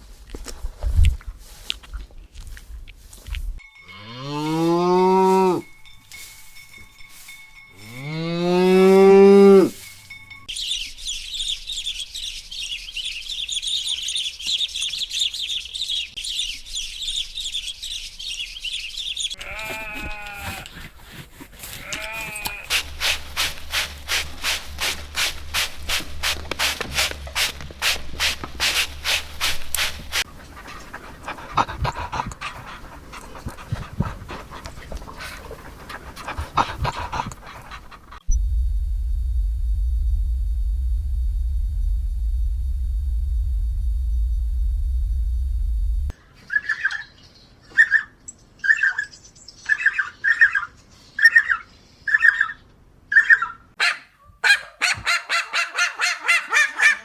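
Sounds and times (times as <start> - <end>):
cow mooing: 3.9 - 5.7, 7.8 - 9.8
short bleat-like calls: 19.4 - 20.7, 21.8 - 22.7
fast rhythmic pulsing call: 22.7 - 33.8.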